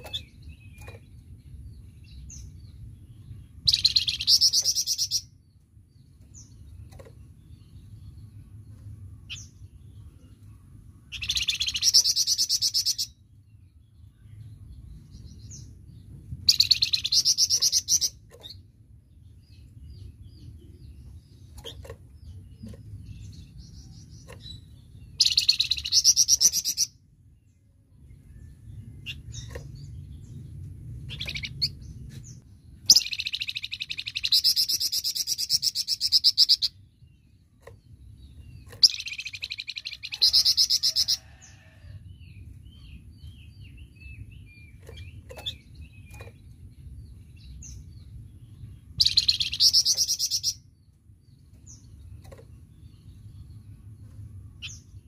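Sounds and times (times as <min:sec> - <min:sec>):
low steady rumble: 0:00.0 - 0:34.4, 0:35.0 - 0:55.0
soft bird chirps: 0:00.0 - 0:42.0.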